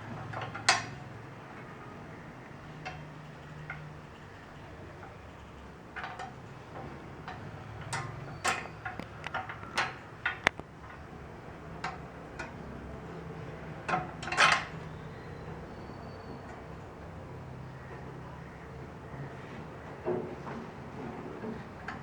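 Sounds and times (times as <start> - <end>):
parts clicking and knocking: 2.6 - 12.7.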